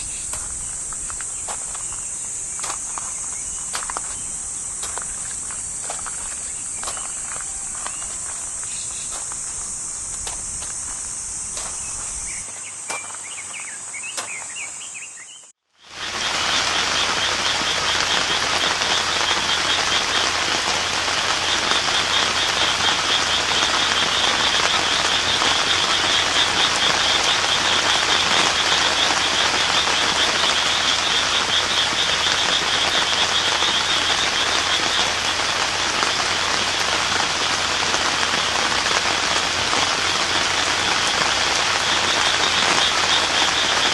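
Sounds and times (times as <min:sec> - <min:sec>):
steady rain: 0:00.0 - 0:14.4, 0:15.7 - 0:43.9
faint chirps: 0:00.0 - 0:18.2
high insect drone: 0:00.0 - 0:43.9
frog pulsing trill: 0:15.9 - 0:43.9.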